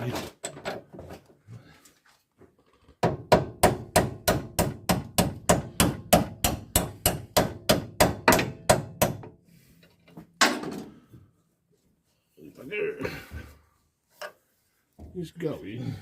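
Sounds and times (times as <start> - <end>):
hammer striking metal: 3.3 - 9.2.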